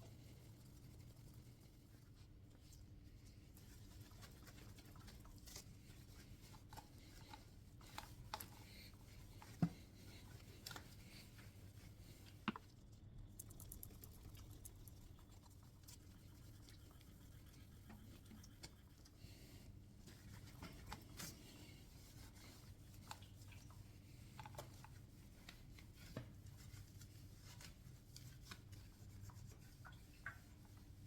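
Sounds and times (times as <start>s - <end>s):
low steady hum: 0.0s - 31.0s
light clicks and taps: 6.4s - 11.5s, 12.2s - 15.0s.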